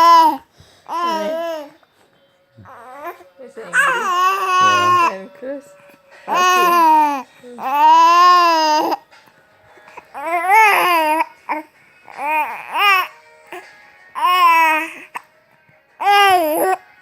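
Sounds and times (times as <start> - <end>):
baby vocalizing: 0.0 - 1.8, 2.7 - 5.1, 6.3 - 9.0, 9.9 - 13.6, 14.2 - 15.2, 16.0 - 16.8.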